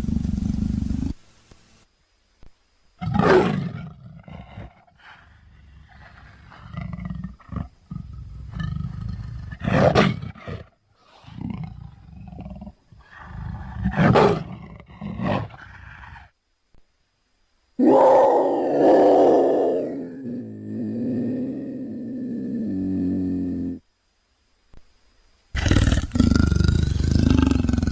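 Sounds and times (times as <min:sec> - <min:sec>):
big cat growling: 0:03.0 - 0:16.3, 0:17.8 - 0:23.8, 0:25.6 - 0:27.9
big cat roaring: 0:17.8 - 0:23.8, 0:25.6 - 0:27.9.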